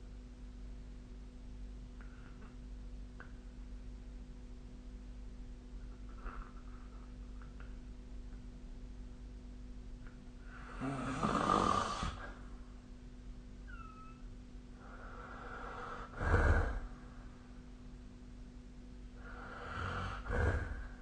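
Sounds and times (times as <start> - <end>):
person snoring: 10.4 - 12.4, 14.8 - 16.9, 19.2 - 21.0.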